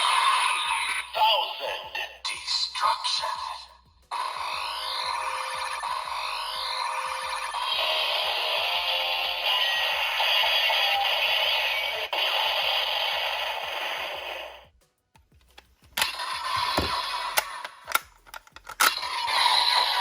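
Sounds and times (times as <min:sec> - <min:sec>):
toy belt electronic sound effect: 0:00.0 - 0:14.6, 0:16.0 - 0:20.0
plastic toy clicking and rattling: 0:15.5 - 0:20.0.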